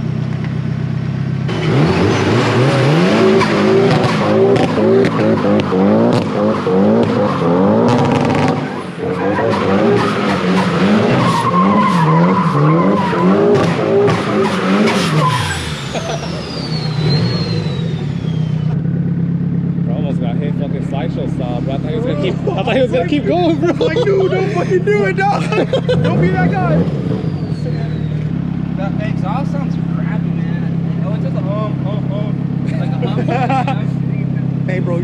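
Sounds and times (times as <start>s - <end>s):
car engine revving: 0.0s - 35.0s
tyres squealing: 1.6s - 18.8s, 21.8s - 28.4s.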